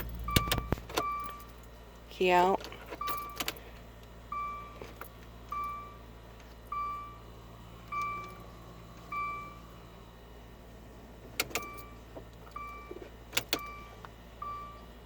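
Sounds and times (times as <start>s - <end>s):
dashboard warning chime: 0.0s - 1.6s, 2.2s - 3.6s, 4.3s - 6.1s, 6.7s - 9.7s, 11.5s - 15.0s
ignition key clicks: 0.0s - 1.7s, 2.6s - 4.2s, 7.8s - 9.3s, 11.3s - 14.2s.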